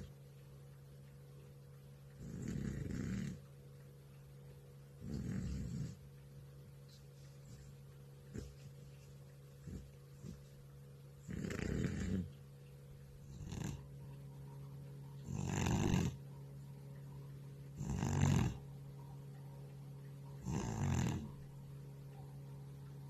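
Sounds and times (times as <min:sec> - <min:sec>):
cat snoring: 0:02.2 - 0:03.4, 0:05.0 - 0:06.0, 0:08.3 - 0:08.7, 0:09.6 - 0:10.5, 0:11.2 - 0:12.4, 0:13.2 - 0:13.9, 0:15.2 - 0:16.2, 0:17.8 - 0:18.6, 0:20.4 - 0:21.4.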